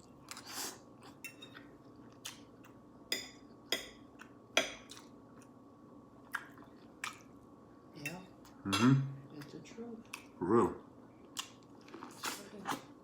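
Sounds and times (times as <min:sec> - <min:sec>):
person chewing food: 0:00.0 - 0:05.6, 0:06.2 - 0:07.4, 0:11.1 - 0:13.0.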